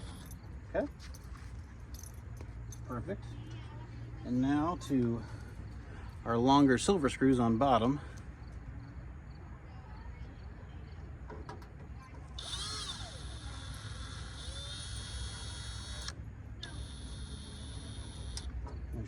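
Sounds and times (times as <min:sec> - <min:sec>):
power drill motor whine: 0:12.3 - 0:18.5.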